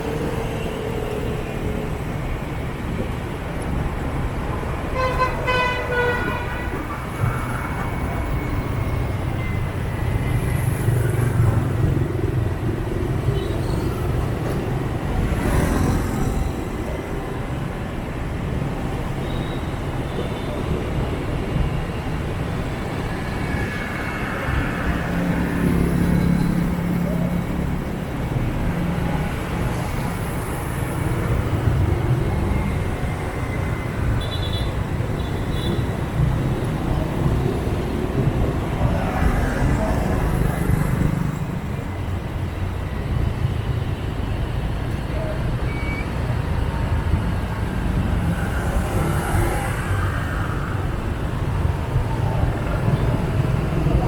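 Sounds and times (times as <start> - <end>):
traffic rumble of engines and tyres: 0.0 - 54.0.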